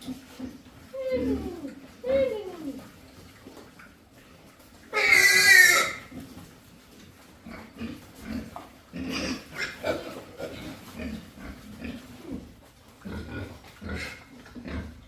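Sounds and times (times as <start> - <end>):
pigs grunting: 0.0 - 1.8, 7.4 - 15.0.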